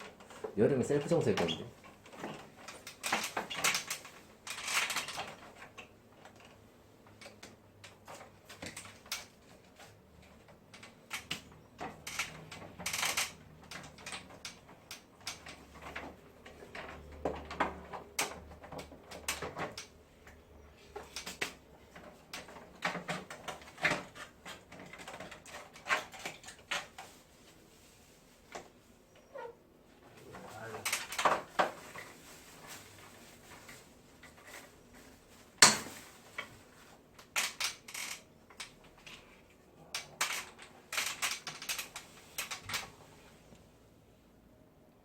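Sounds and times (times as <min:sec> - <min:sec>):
hard parts clicking and knocking: 0:00.0 - 0:27.1, 0:35.6 - 0:36.6, 0:37.2 - 0:42.9.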